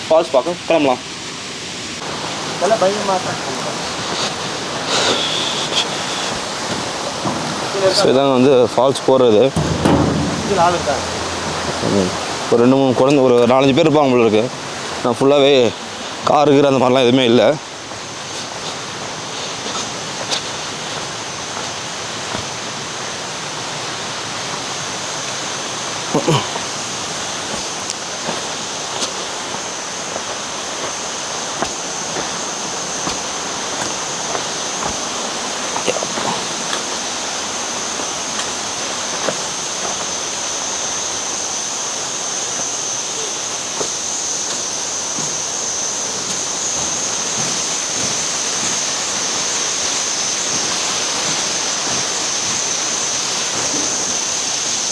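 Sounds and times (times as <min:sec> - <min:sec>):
faint knocks: 0:06.7 - 0:08.2, 0:09.5 - 0:13.2.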